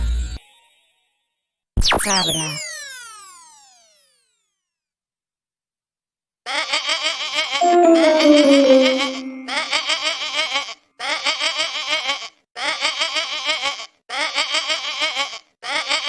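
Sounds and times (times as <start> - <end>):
falling tone: 7.6 - 9.6
goat bleating: 11.0 - 16.0.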